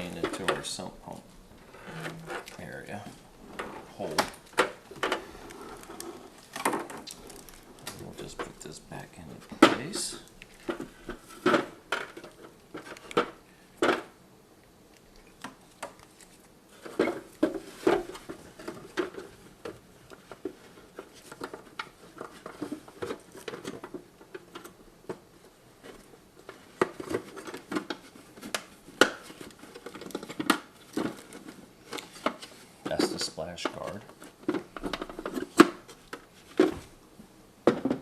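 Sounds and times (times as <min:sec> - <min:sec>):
plastic parts clicking and knocking: 0:03.6 - 0:14.2, 0:16.8 - 0:25.2, 0:25.8 - 0:36.8, 0:37.6 - 0:38.0.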